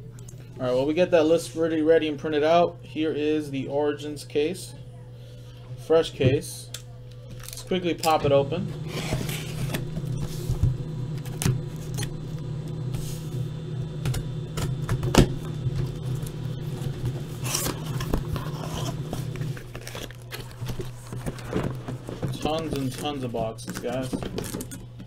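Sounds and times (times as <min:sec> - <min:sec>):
low hum: 0:00.0 - 0:25.0
cardboard flaps scraping and rustling: 0:16.6 - 0:24.6.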